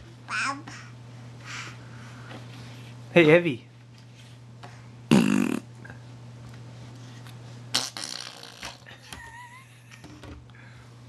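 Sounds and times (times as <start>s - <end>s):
baby blowing a raspberry: 5.1s - 5.6s, 7.7s - 8.6s.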